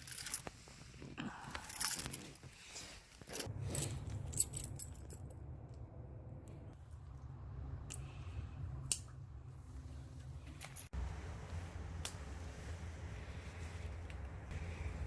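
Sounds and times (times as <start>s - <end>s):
metallic jingling and clinks: 0.0s - 0.5s, 1.6s - 2.5s, 3.2s - 5.3s
low steady hum: 0.0s - 15.0s.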